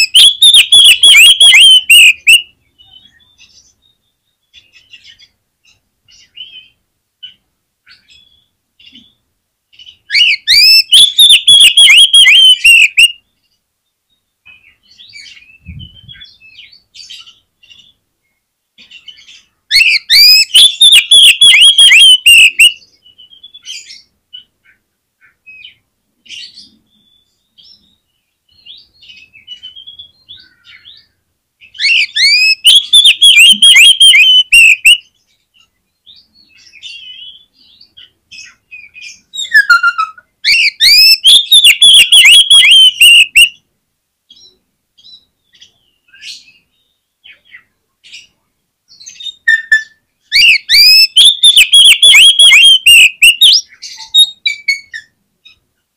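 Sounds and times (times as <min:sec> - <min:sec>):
bird whistled song: 0:00.0 - 0:05.3, 0:09.8 - 0:13.2, 0:14.5 - 0:18.0, 0:19.0 - 0:24.1, 0:31.7 - 0:35.1, 0:36.0 - 0:43.6, 0:48.9 - 0:55.1
bird twittering and chirps: 0:00.0 - 0:18.0, 0:18.8 - 0:43.6, 0:44.3 - 0:55.6.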